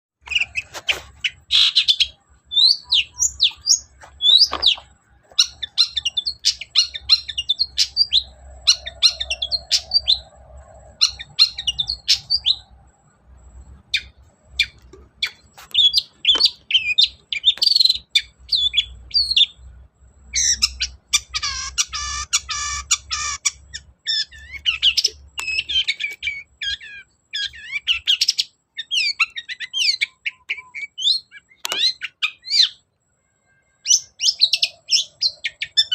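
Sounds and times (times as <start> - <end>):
harsh scratchy bird chatter: 0.2 - 12.7, 13.8 - 19.3, 20.4 - 28.4
bird singing varied song: 0.2 - 35.9.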